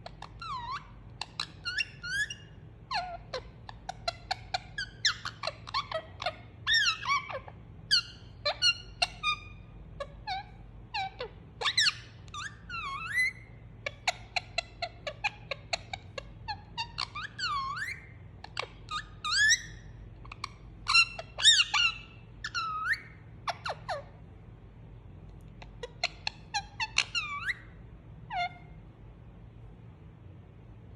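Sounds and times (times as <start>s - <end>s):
parakeet whistled calls: 0.0s - 24.2s, 25.6s - 28.8s
parakeet squeaky chirps: 0.0s - 24.3s, 25.6s - 28.8s.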